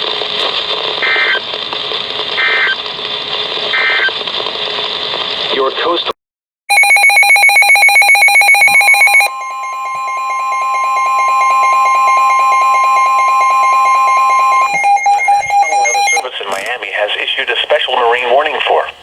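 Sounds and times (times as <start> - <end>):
pulsing electronic alarm: 6.7 - 16.3
steady alarm tone: 6.7 - 16.3.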